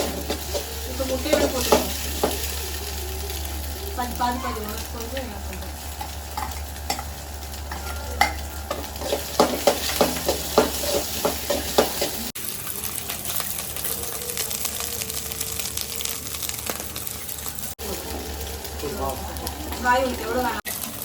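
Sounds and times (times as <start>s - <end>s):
utensil clanking and scraping pan: 0.0s - 3.0s, 5.6s - 12.3s
fried rice sizzling in a pan: 0.0s - 21.0s.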